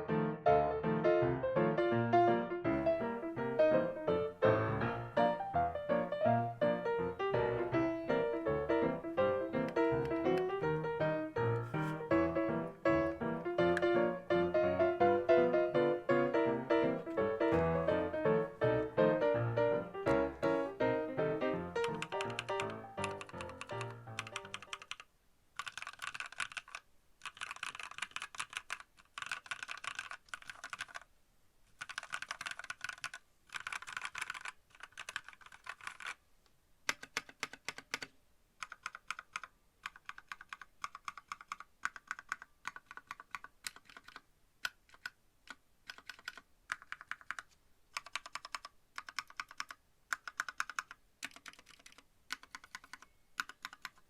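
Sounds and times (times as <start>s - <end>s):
background music: 0.0s - 24.6s
mechanical keyboard typing: 8.3s - 11.0s, 16.8s - 31.1s, 31.8s - 36.2s, 36.9s - 54.0s.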